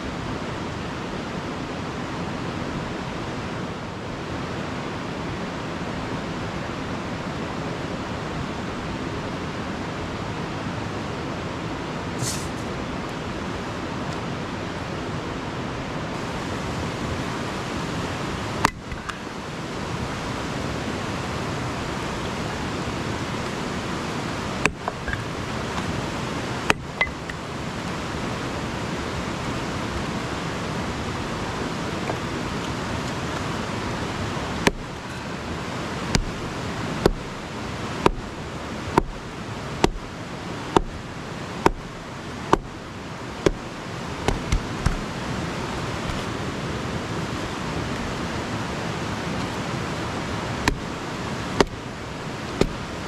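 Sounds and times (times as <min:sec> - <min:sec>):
river rushing: 0:00.0 - 0:53.0.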